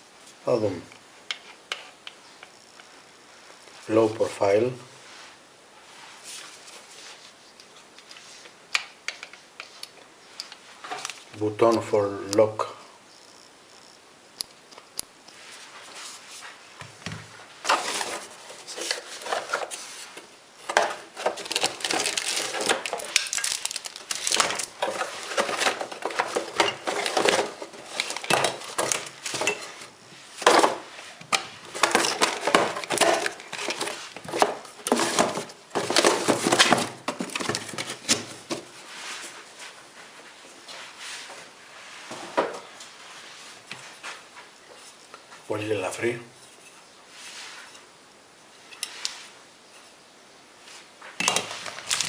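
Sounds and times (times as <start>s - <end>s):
plastic and metal pieces set down: 17.0s - 38.7s, 51.2s - 52.0s
clatter of parts being unpacked: 17.6s - 38.7s, 51.2s - 52.0s.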